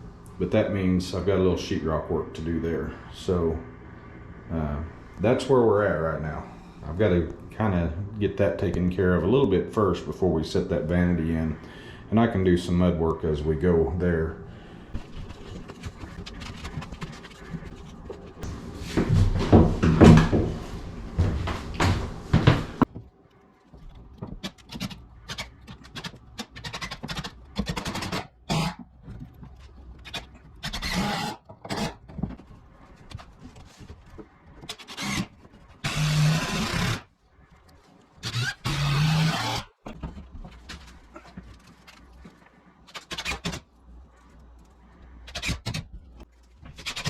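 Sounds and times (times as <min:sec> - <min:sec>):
hand tool scraping a wall: 0:29.5 - 0:37.1.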